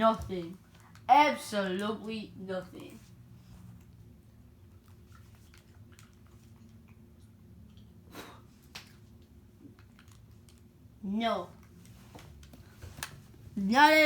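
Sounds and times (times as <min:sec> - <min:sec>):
chewing with mouth clicks: 0:04.6 - 0:08.0.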